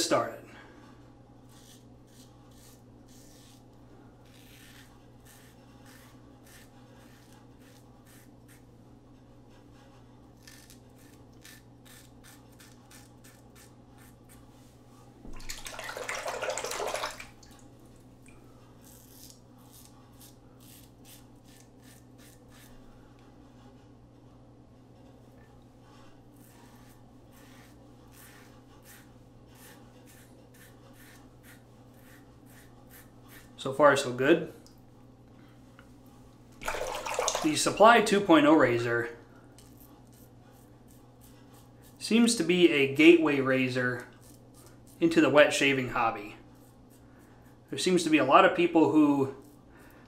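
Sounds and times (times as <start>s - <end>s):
razor scraping through stubble: 1.5s - 8.7s, 10.4s - 14.4s, 18.8s - 22.8s, 26.3s - 33.6s
running water: 15.3s - 17.7s, 36.6s - 38.1s.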